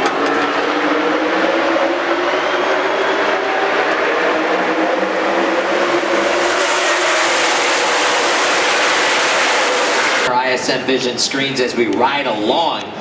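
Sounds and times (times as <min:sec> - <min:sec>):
race cars at full throttle: 0:00.0 - 0:10.3.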